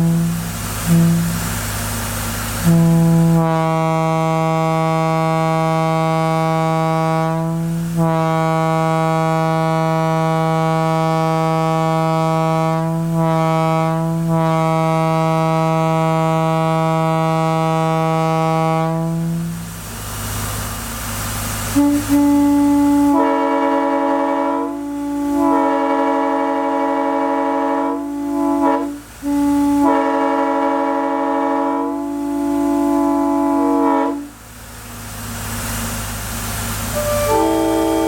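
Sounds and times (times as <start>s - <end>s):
locomotive air horn: 0.0s - 34.7s, 36.6s - 38.0s.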